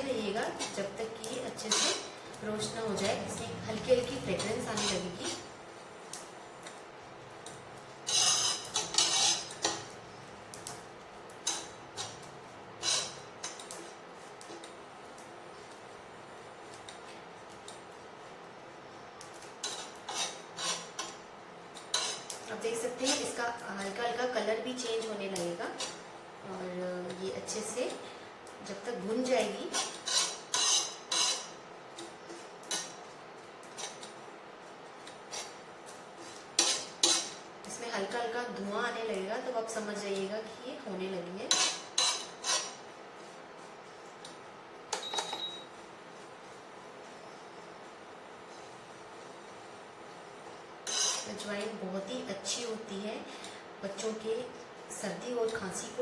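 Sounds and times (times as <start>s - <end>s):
scraping on a griddle: 1.5s - 5.6s, 6.6s - 10.0s, 11.4s - 14.8s, 19.3s - 24.0s, 25.7s - 26.1s, 29.4s - 37.5s, 41.5s - 44.2s, 50.5s - 51.5s.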